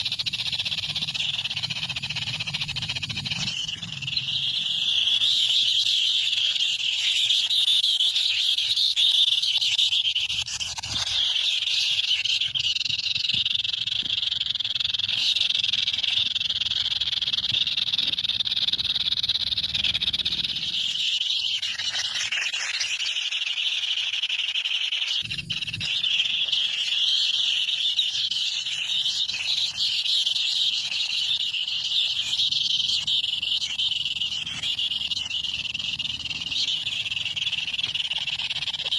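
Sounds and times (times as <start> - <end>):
chorus of calling animals: 0.0 - 38.9.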